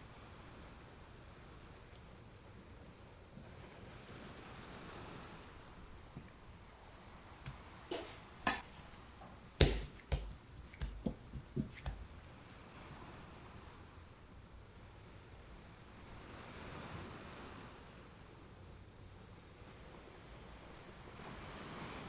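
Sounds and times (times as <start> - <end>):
faint room hush: 5.6 - 12.3
knocks and taps on dishes: 7.9 - 12.0.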